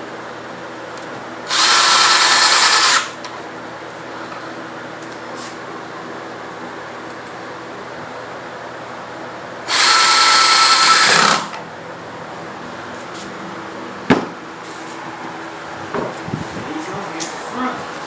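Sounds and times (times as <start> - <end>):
power drill whining: 1.5 - 3.2, 9.7 - 11.6.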